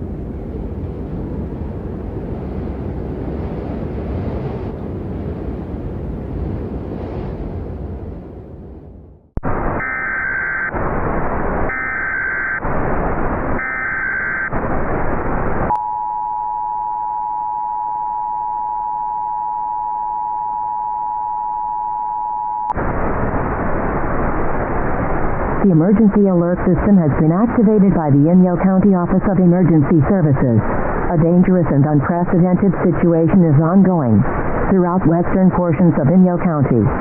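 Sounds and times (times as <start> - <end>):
radio static: 9.4 - 16.2, 22.0 - 37.0
warbling data tones: 9.4 - 30.4
two-tone attention signal: 15.7 - 22.8.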